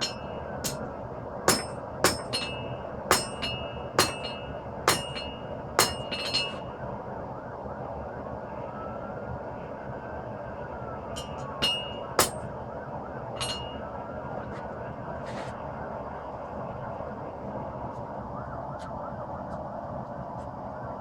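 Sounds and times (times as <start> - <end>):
hammer ringing on anvil: 0.0 - 0.9, 1.5 - 6.7, 11.2 - 12.5, 13.4 - 13.9
steady background noise: 0.0 - 21.0.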